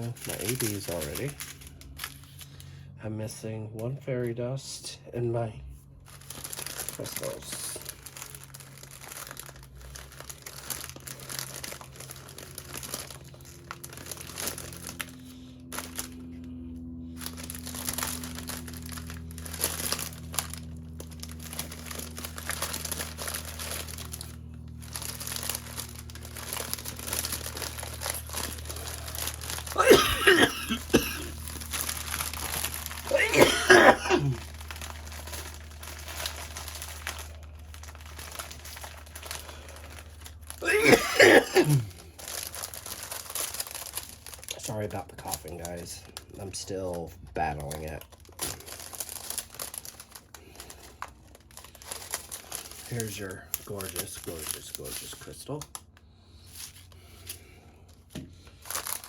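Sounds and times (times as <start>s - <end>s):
plastic packets crinkling: 0.0s - 2.7s, 5.9s - 16.5s, 17.1s - 59.0s
person coughing hard: 29.8s - 31.4s, 33.1s - 34.4s, 40.6s - 42.0s.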